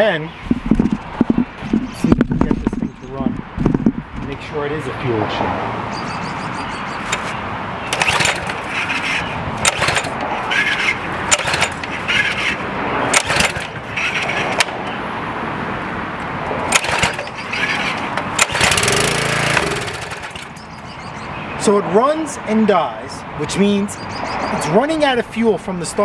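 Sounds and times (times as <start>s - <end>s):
recoil starter pulls: 7.0s - 15.0s, 16.2s - 20.9s.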